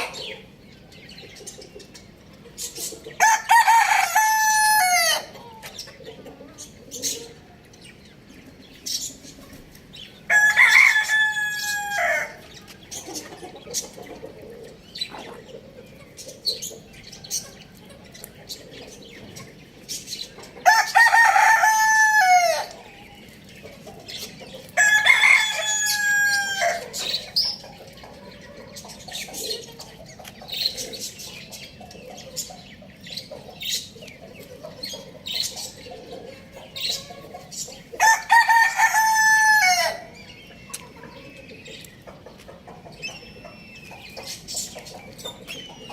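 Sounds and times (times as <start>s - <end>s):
hens clucking softly: 0.0s - 3.2s, 5.0s - 9.9s, 10.6s - 21.0s, 22.5s - 39.0s, 39.9s - 45.9s
rooster crowing: 3.2s - 5.3s, 10.3s - 12.4s, 20.6s - 22.8s, 24.8s - 27.0s, 38.0s - 40.1s.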